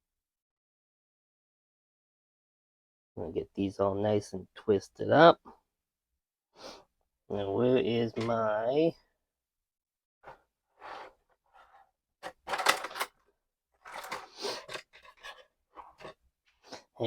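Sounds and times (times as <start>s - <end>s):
tools clattering on workbench: 12.2s - 13.1s, 13.8s - 16.2s
tools rattling: 12.2s - 13.2s, 13.8s - 16.2s.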